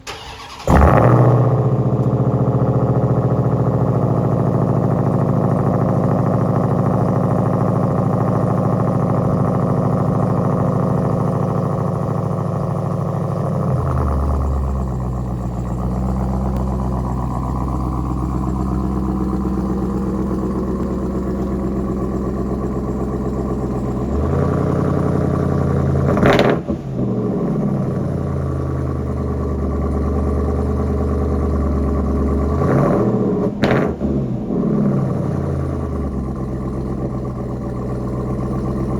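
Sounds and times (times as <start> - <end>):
engine revving: 0.0 - 38.9
truck engine starting and idling: 0.0 - 38.9.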